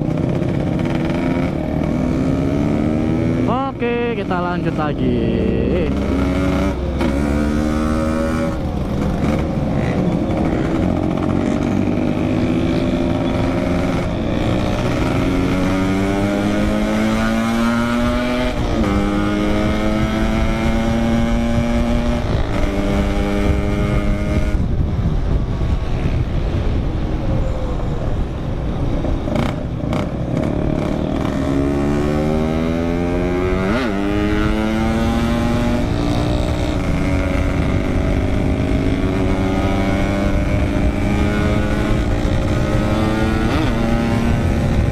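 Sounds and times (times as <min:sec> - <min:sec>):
motorcycle engine accelerating: 0:00.0 - 0:26.8, 0:28.8 - 0:44.9
wind rumble on microphone: 0:05.7 - 0:44.9.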